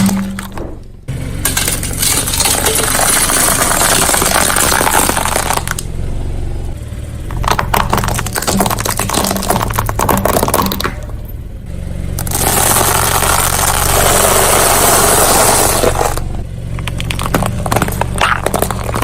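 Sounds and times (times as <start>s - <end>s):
car engine hum: 0.0s - 19.0s
tyre crushing dry noodles: 17.0s - 19.0s.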